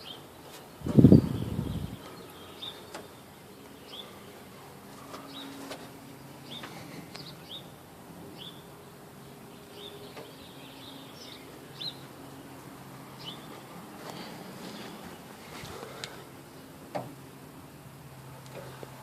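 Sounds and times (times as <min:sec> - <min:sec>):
small bird chirping: 0:00.0 - 0:04.4, 0:09.5 - 0:13.7.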